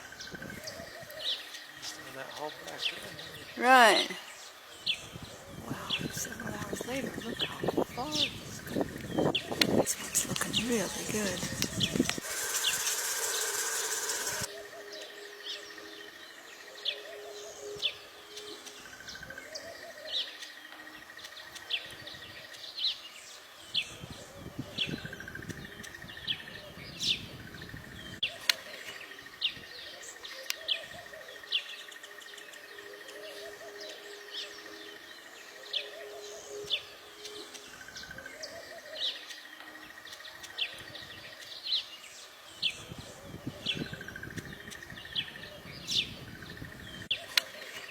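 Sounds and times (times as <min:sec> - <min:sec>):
small birds chirping: 0:00.0 - 0:47.9
steady high buzzing note: 0:10.6 - 0:14.5.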